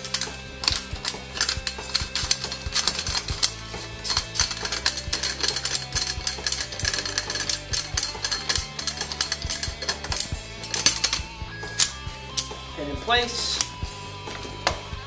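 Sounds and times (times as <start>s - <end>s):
metallic clicks of rifle assembly: 0.0s - 11.2s, 11.8s - 12.5s
background music: 0.0s - 15.0s.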